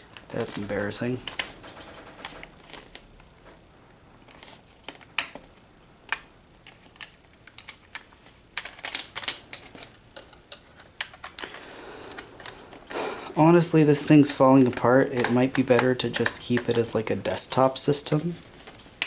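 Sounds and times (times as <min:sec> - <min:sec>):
plastic casing clicks: 0:06.1 - 0:12.9.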